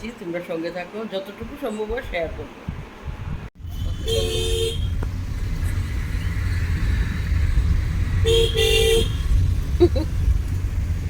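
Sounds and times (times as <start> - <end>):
traffic rumble: 0.0 - 11.0
car horn honking: 3.7 - 5.0, 8.2 - 9.4.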